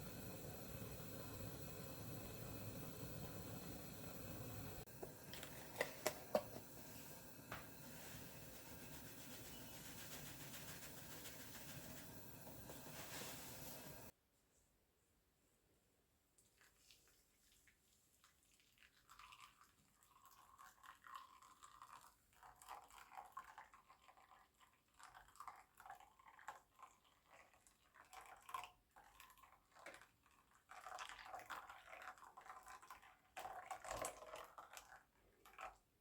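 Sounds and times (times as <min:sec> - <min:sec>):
spoon scraping in a bowl: 0:05.1 - 0:14.1.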